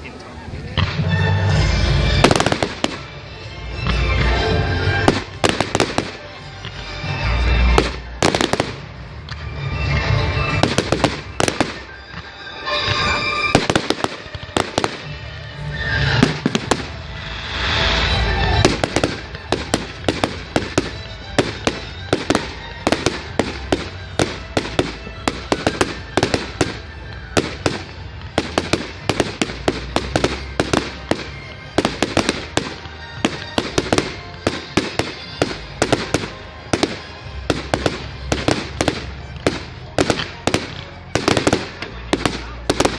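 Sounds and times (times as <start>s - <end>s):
fireworks bursts: 1.6s - 42.9s
firework cracks: 2.2s - 3.1s, 5.0s - 6.3s, 7.7s - 9.4s, 10.6s - 12.2s, 13.5s - 15.3s, 15.9s - 42.9s.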